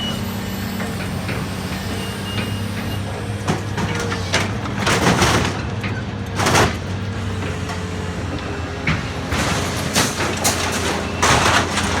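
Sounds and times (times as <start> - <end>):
metal crunching and scraping: 2.8 - 12.0.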